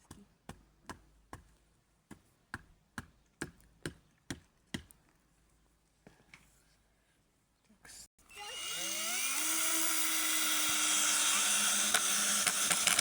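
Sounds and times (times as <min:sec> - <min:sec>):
power screwdriver whining: 0:08.3 - 0:13.0.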